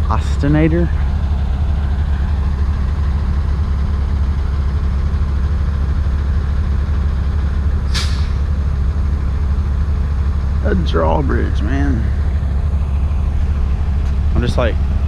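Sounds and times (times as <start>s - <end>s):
vehicle engine idling: 0.0s - 15.0s
short sharp hiss: 7.9s - 8.4s.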